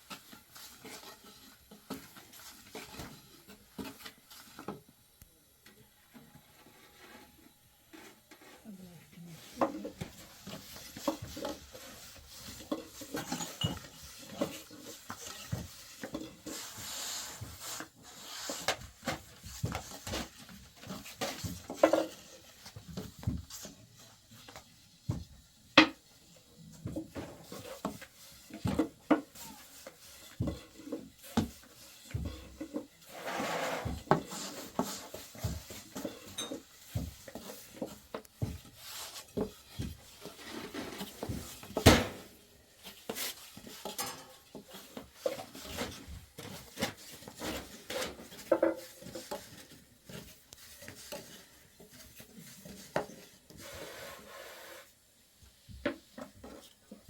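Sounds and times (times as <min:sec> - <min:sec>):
dishes and utensils clattering: 0:12.6 - 0:14.7, 0:35.9 - 0:36.8, 0:43.8 - 0:44.9.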